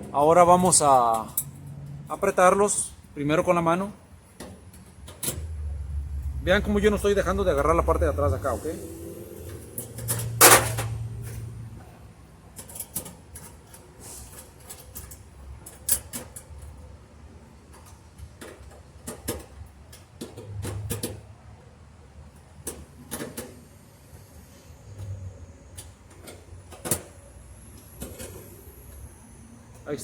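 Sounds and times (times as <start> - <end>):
clicks and knocks of handled parts: 4.3 - 5.6, 12.5 - 16.8, 17.6 - 21.3.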